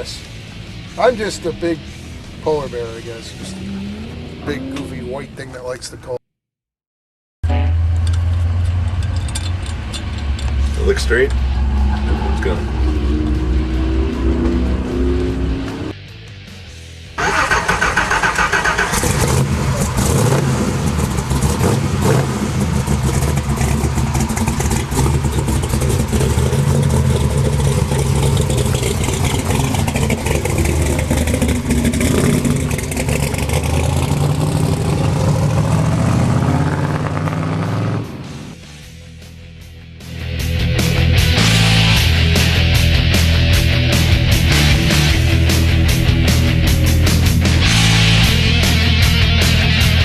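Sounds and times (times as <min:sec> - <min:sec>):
car engine revving under load: 0:00.0 - 0:05.9, 0:07.5 - 0:16.0, 0:17.2 - 0:38.7.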